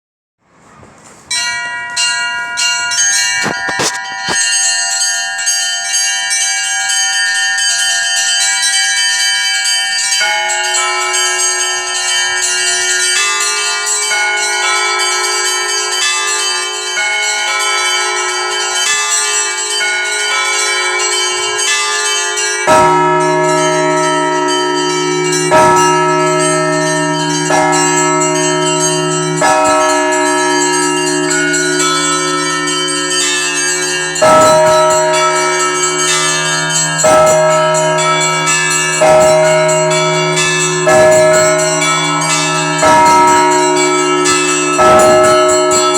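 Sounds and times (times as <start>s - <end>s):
medium bells ringing: 1.2s - 45.9s
small treble bells chiming: 1.3s - 45.9s
large deep bell struck: 22.7s - 45.9s.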